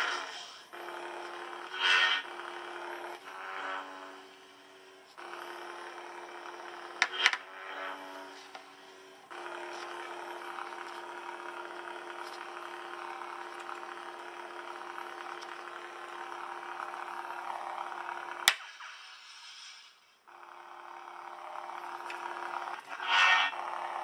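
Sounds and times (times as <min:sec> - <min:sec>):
lightsaber electronic hum: 0:00.0 - 0:15.8, 0:22.7 - 0:24.0.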